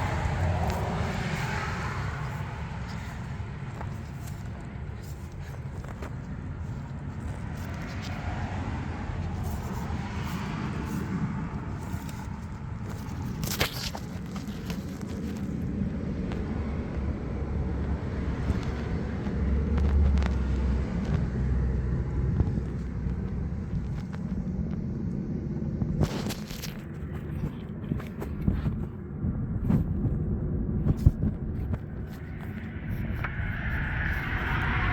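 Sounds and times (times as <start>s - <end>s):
car engine running with knock: 9.0s - 34.3s.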